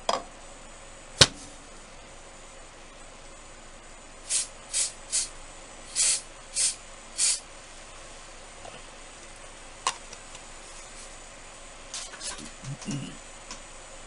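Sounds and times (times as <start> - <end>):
spray bottle spritzes: 4.3 - 5.3, 5.9 - 7.4.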